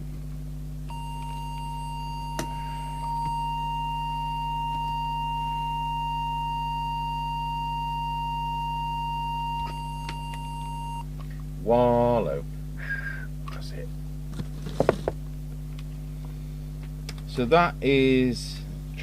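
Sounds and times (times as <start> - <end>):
low steady hum: 0.0 - 19.0
high-pitched test tone: 0.9 - 11.0.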